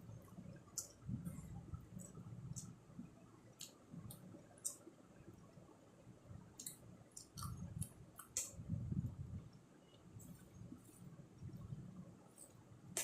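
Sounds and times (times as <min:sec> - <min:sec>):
soft chewing: 0:06.6 - 0:08.6.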